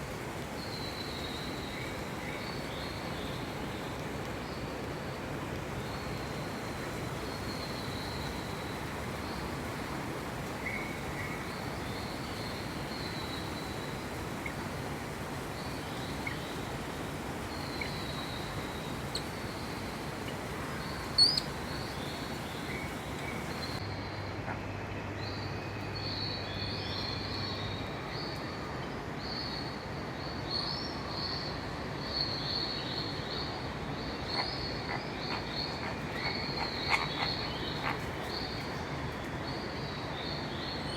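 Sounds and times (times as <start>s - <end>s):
steady background hiss: 0.0s - 40.9s
birds chirping: 17.6s - 23.8s.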